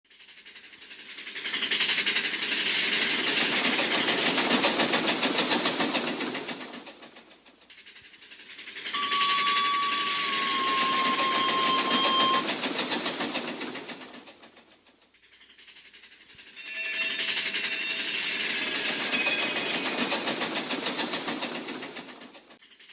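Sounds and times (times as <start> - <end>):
roller coaster cars rattling: 0.2 - 22.8
steady high tone: 8.9 - 12.5, 17.4 - 20.4.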